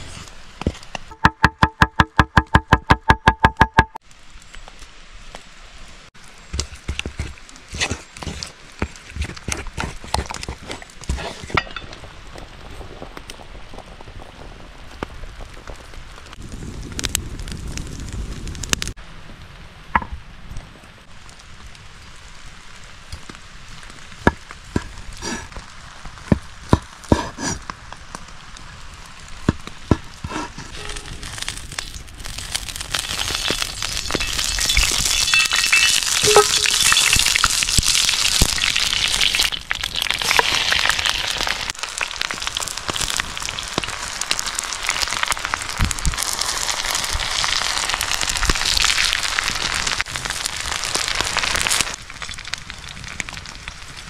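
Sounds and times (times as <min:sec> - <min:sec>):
sharp knocks: 0:01.1 - 0:04.0
food sizzling in a pan: 0:31.1 - 0:52.4.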